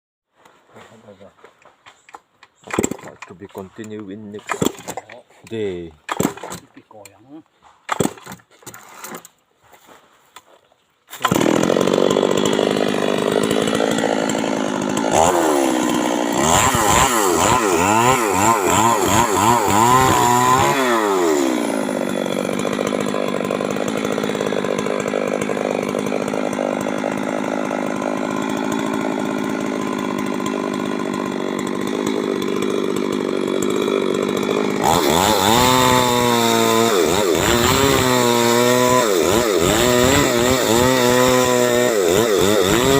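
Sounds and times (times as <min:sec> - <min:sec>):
chainsaw revving: 0:02.7 - 0:05.2, 0:11.1 - 0:42.9.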